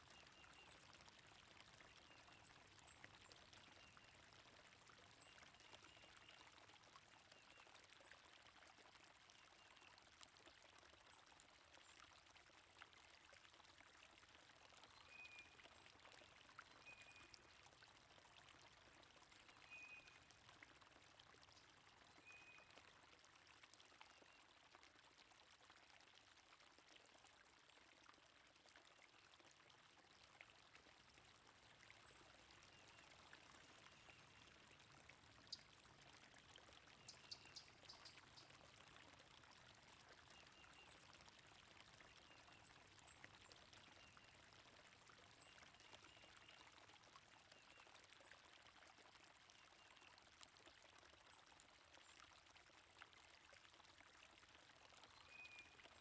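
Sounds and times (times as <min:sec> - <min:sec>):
running water: 0:27.2 - 0:48.8.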